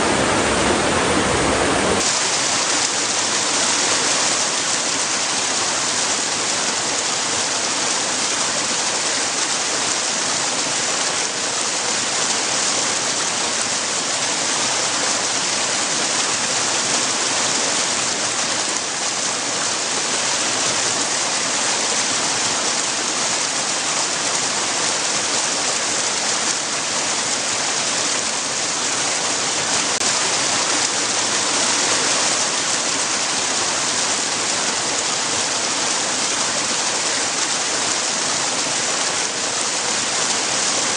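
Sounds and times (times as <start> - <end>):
water rushing against rocks: 0.0 - 40.9.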